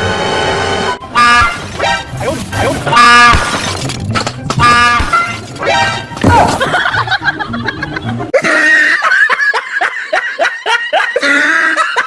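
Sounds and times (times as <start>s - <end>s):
music: 1.0s - 8.4s
high-pitched laughing: 6.5s - 12.0s.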